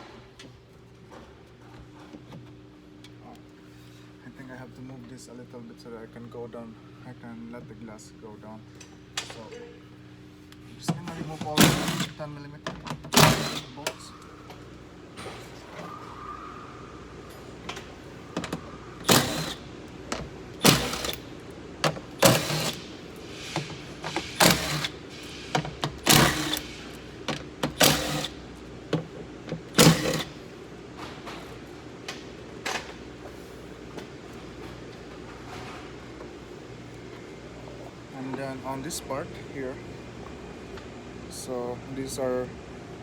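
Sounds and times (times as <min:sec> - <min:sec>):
cordless power tool bursts: 0:11.5 - 0:12.3, 0:13.0 - 0:14.0, 0:18.4 - 0:28.5, 0:29.6 - 0:30.4.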